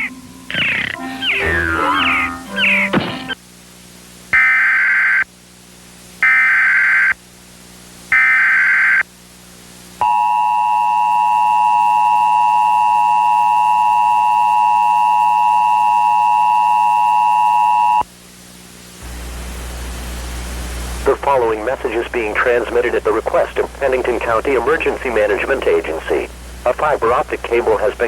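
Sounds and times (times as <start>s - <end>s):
screeching data squawks: 0.0s - 3.4s
two-tone attention signal: 0.0s - 3.4s.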